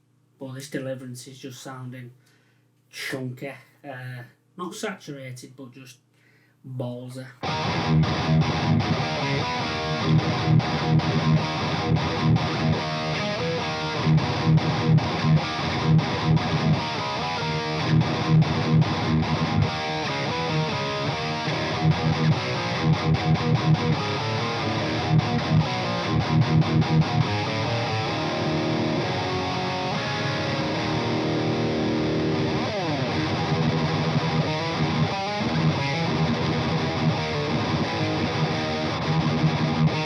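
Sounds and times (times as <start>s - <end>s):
overdriven electric guitar riff: 7.4s - 40.0s.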